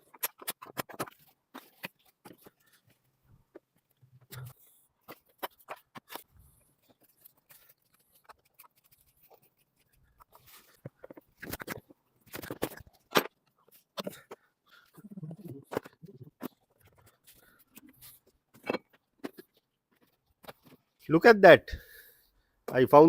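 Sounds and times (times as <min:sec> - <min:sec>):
plastic parts being unclipped: 0:00.0 - 0:02.9, 0:10.2 - 0:14.3.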